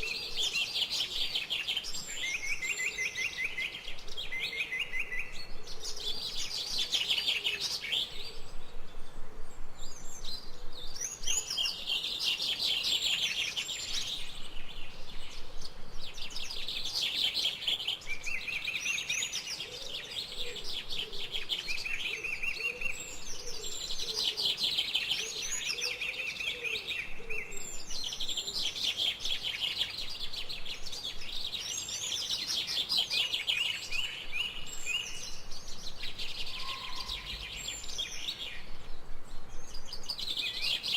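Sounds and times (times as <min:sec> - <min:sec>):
birds chirping and trilling: 0:00.0 - 0:40.9
lower bird call: 0:36.0 - 0:38.7.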